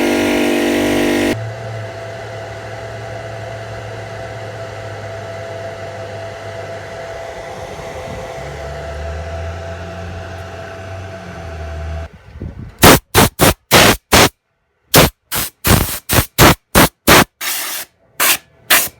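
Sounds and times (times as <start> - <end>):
air compressor humming: 0.0 - 12.1, 12.8 - 14.3, 14.9 - 18.9
short sharp noise bursts: 12.8 - 18.9.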